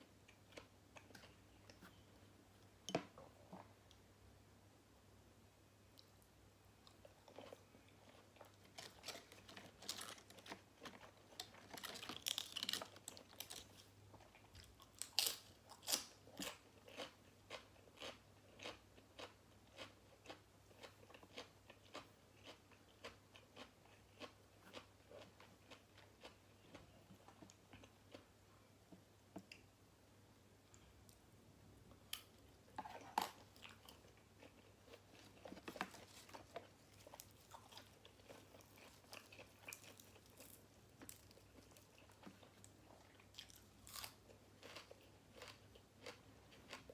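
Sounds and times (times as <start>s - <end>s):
chewing: 32.8s - 46.9s
crunchy biting of vegetables: 43.4s - 46.9s.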